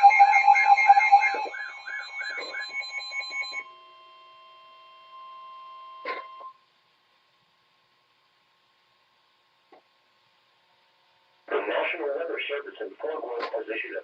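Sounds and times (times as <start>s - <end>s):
warbling alert beeps: 0.0s - 3.6s
faint steady tone: 0.0s - 8.7s.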